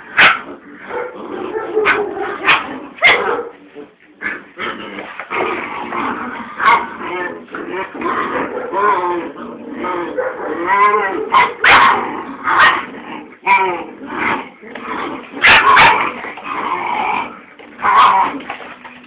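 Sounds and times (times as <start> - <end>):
puppy barks: 0.2 - 3.6, 10.1 - 12.9, 15.4 - 16.2.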